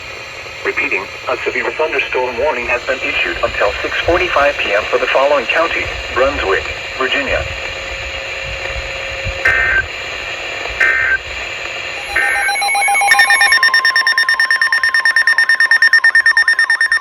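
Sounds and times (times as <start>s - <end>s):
pulsing electronic alert tone: 12.0s - 17.0s
warbling digital data tones: 12.0s - 17.0s.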